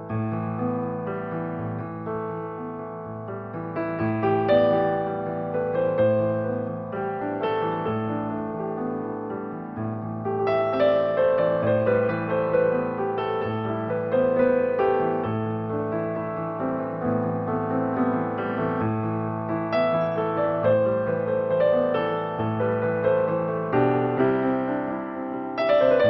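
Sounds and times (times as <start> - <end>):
slow gentle piano music: 0.0 - 26.0.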